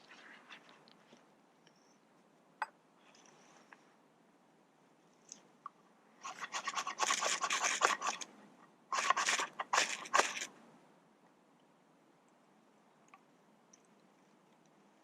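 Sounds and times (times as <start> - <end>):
ferro rod scraped with striker: 6.2 - 8.3, 8.9 - 10.5.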